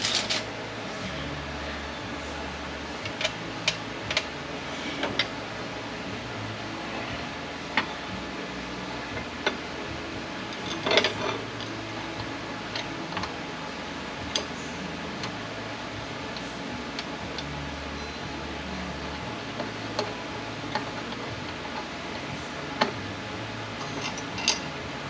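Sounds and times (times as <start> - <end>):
metal parts clicking and clinking: 0.0 - 0.5, 10.5 - 11.7, 14.3 - 14.5, 23.8 - 24.7
metal parts rattling: 0.0 - 0.5, 10.6 - 11.4, 23.8 - 24.7
steady low hum: 0.0 - 25.0.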